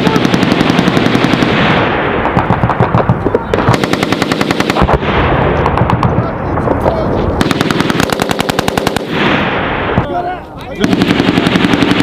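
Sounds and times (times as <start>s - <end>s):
automatic gunfire bursts: 0.0s - 5.0s, 7.4s - 9.4s, 10.8s - 12.0s.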